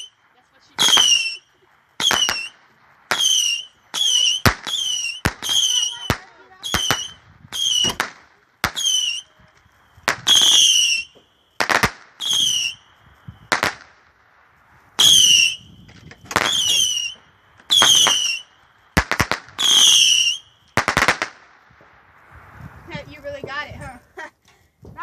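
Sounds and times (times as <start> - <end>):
shrill firework whistles: 0.0 - 0.2, 0.8 - 13.9, 14.8 - 21.3
fireworks popping and cracking: 0.0 - 25.0.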